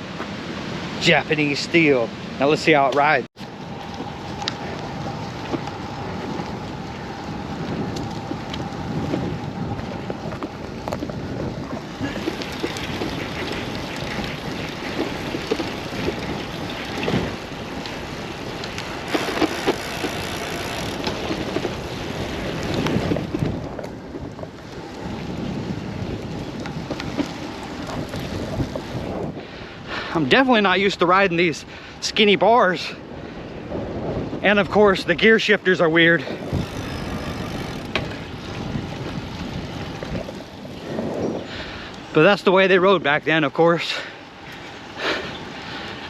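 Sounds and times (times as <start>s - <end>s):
bike tyres rolling on road: 0.0s - 46.0s
wind buffeting microphone: 0.0s - 46.0s.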